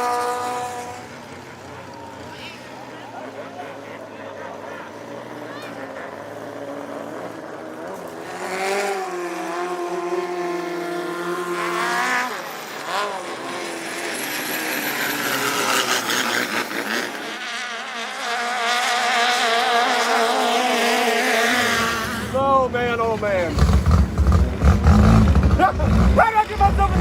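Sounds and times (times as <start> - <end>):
boat engines revving hard: 0.0 - 27.0.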